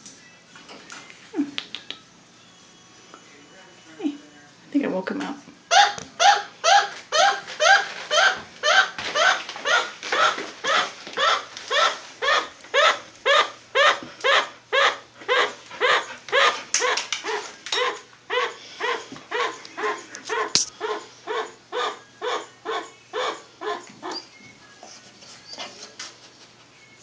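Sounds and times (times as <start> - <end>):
chinchilla barking calls: 5.7 - 24.3.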